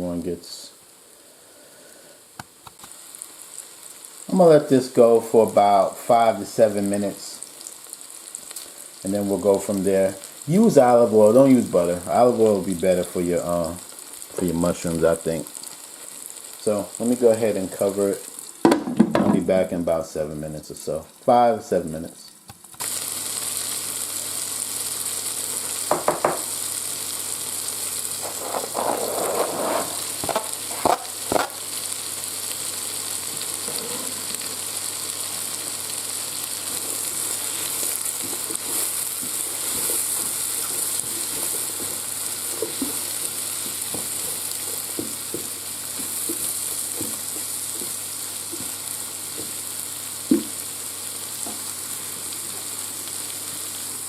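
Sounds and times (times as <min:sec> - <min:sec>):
vegetables sizzling in butter: 0:00.0 - 0:54.0
utensil knocking and scraping: 0:25.9 - 0:26.4, 0:28.2 - 0:31.5.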